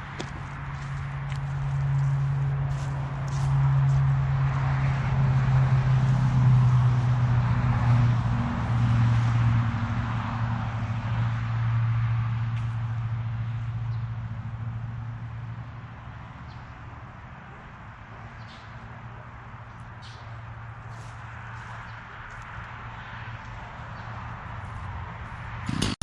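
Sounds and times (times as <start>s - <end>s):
engine running at low speed: 0.0s - 26.0s.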